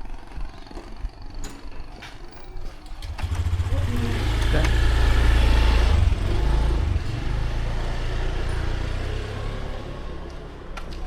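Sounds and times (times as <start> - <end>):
vehicle engine passing by: 3.0 - 11.0.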